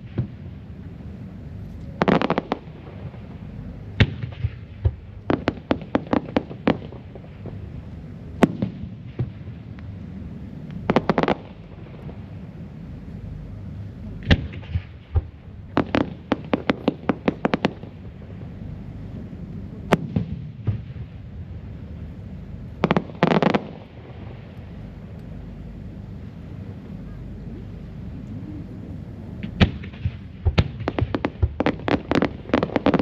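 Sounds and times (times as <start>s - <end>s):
firework bangs: 0.0s - 0.6s, 2.0s - 7.8s, 8.4s - 9.8s, 10.7s - 12.5s, 14.2s - 18.6s, 19.2s - 21.6s, 22.8s - 24.6s, 29.4s - 33.0s
crackling firework reports: 0.0s - 33.0s.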